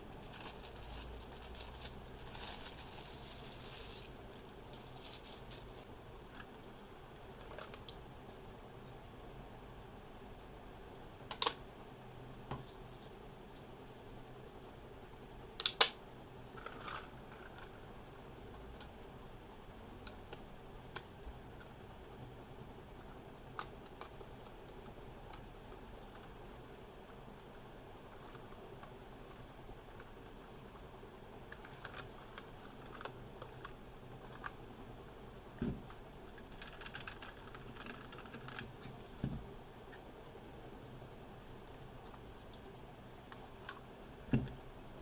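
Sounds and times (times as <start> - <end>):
mechanical keyboard typing: 36.4 - 38.7.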